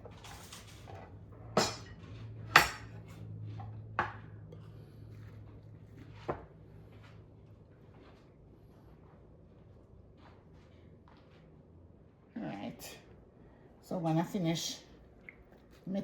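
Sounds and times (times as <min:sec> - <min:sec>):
dishes clinking against bowl: 0:01.5 - 0:03.0.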